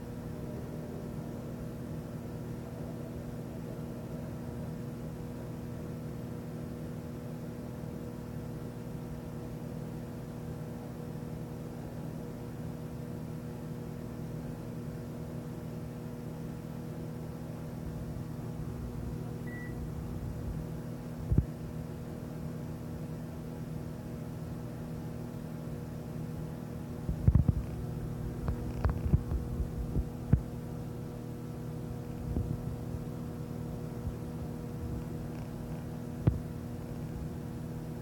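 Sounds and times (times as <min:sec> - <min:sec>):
microwave oven humming: 0:00.0 - 0:38.0
sharp clicks and pops: 0:28.4 - 0:29.4.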